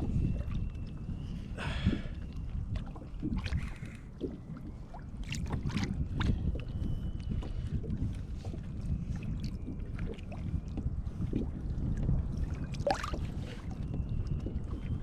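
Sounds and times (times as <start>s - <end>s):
water lapping and splashing: 0.0s - 15.0s
wind buffeting microphone: 0.0s - 15.0s.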